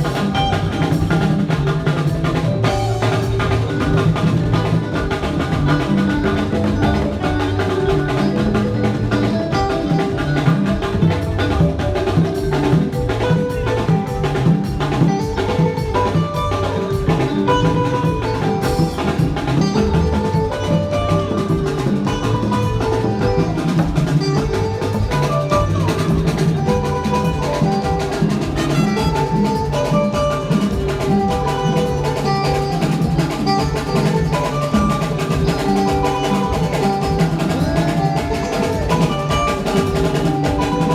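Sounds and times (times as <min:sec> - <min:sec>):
drum kit steady beat: 0:00.0 - 0:40.9
held melodic lines: 0:00.0 - 0:40.9.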